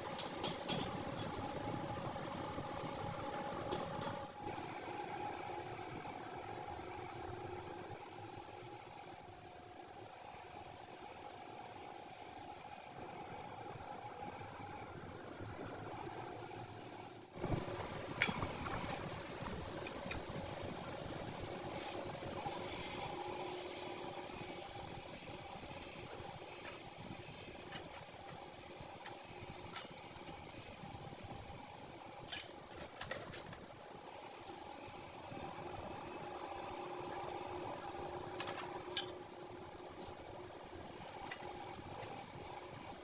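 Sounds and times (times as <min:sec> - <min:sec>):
machine hum and hiss: 0:00.0 - 0:43.0
metal tools clicking and knocking: 0:18.2 - 0:19.0, 0:26.4 - 0:27.0, 0:27.6 - 0:30.5, 0:32.2 - 0:33.7, 0:38.3 - 0:39.2.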